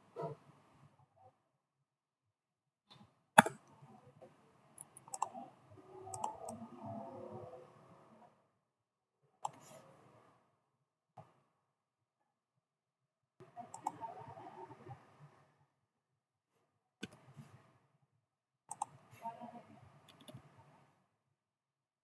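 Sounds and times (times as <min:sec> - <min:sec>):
faint low background noise: 0:03.0 - 0:11.6, 0:13.4 - 0:18.0
computer mouse clicking: 0:04.8 - 0:05.4, 0:06.1 - 0:06.6, 0:09.4 - 0:09.7, 0:13.7 - 0:14.2, 0:18.7 - 0:19.0, 0:20.1 - 0:20.5.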